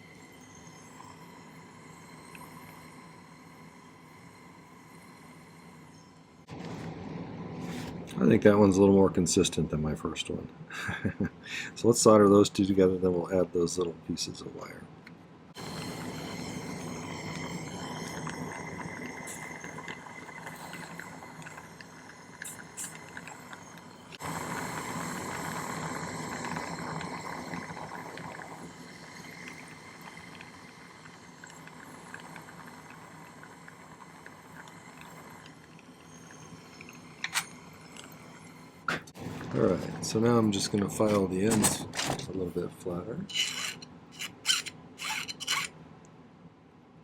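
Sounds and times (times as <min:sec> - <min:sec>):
torch flame hissing: 0:15.6 - 0:39.4.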